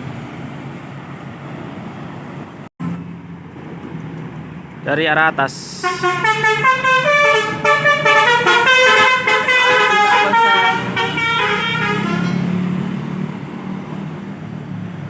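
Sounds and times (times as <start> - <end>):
bus engine running: 0.0 - 15.0
multi-tone bus horn tune: 5.8 - 12.8.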